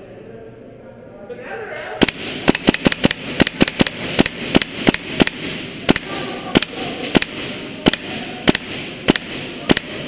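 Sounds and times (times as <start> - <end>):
airsoft gun single shots: 2.0 - 10.0.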